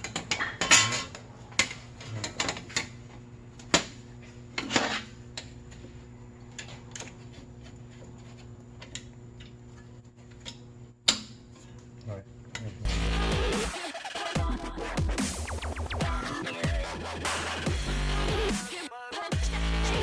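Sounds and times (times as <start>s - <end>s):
metal parts clanking: 0.0s - 1.2s
metal scrape: 4.6s - 5.2s.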